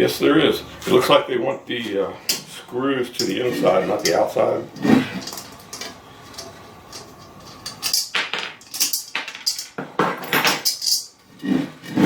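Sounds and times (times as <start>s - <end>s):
metal parts clinking and rattling: 5.2s - 11.2s.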